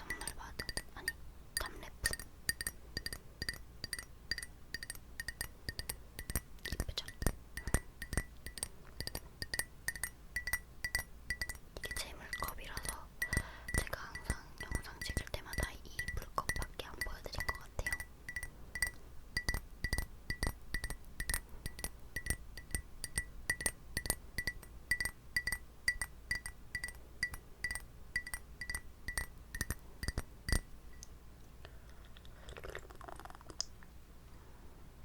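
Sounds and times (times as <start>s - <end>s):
fingernails tapping glass: 17.4s - 30.6s.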